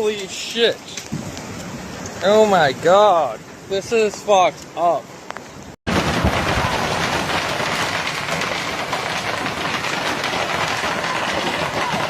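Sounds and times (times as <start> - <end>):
hail pelting down: 5.9 - 12.0.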